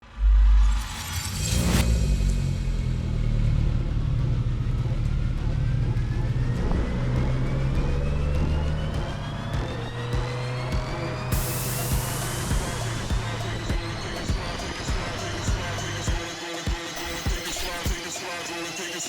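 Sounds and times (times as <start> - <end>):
vehicle engine running: 1.6 - 16.3
thin high rising tone: 6.2 - 18.3.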